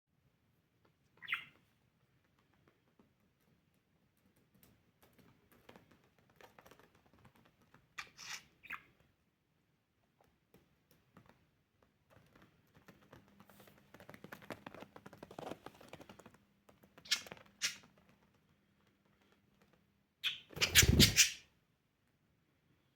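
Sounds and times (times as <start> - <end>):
soft crunching and scratching: 10.2 - 19.8.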